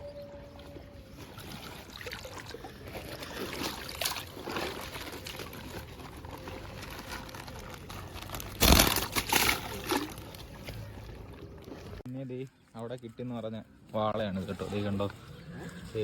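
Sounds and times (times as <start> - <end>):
muddy water splashing: 0.4 - 12.0.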